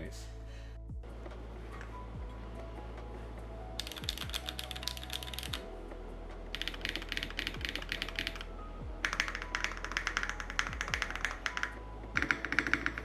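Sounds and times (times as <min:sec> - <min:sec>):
mechanical keyboard typing: 0:03.8 - 0:05.6, 0:06.6 - 0:08.4, 0:09.0 - 0:13.0.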